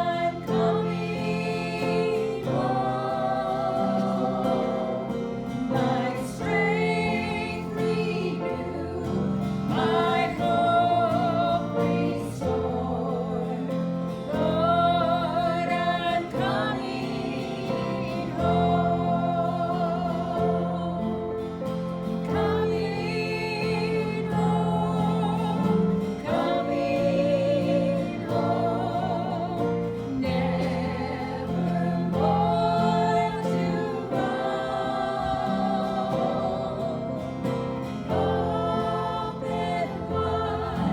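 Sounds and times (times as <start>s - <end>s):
gospel singing: 0.0s - 40.9s.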